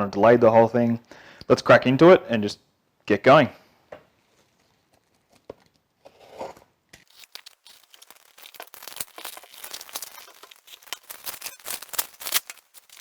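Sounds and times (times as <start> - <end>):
packaging tearing and crinkling: 7.0 - 13.0.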